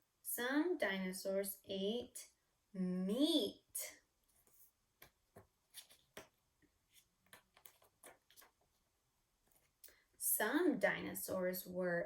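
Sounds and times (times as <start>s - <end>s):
paper page clicks and rustles: 4.4s - 8.7s.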